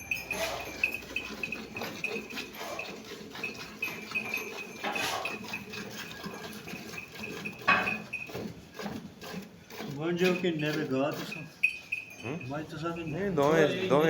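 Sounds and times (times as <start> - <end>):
high thin pulsing chirp: 0.0 - 2.3, 11.3 - 13.9
farm livestock: 0.0 - 14.0.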